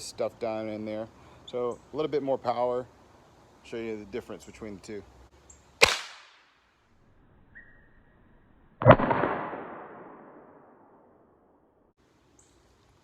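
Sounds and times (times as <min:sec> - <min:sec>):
pistol shot: 0:05.8 - 0:06.5, 0:08.8 - 0:11.1.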